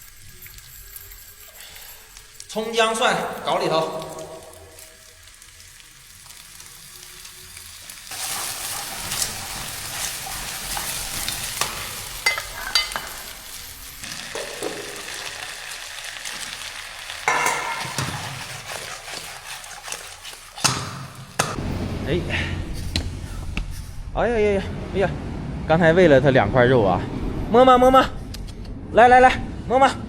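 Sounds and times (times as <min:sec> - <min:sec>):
meat sizzling in hot oil: 0:00.0 - 0:21.6.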